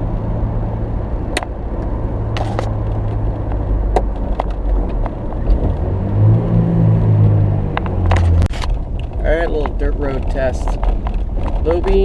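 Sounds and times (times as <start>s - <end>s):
truck engine humming: 0.0s - 12.0s
light clicks and knocks: 7.8s - 12.0s.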